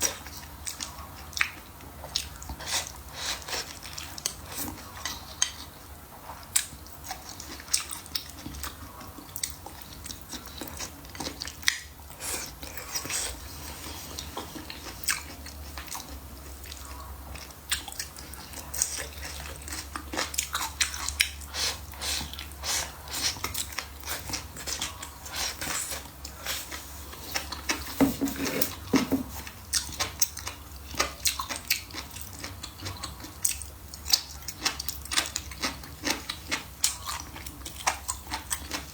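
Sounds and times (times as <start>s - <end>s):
crunchy chewing of food: 0.0s - 38.9s.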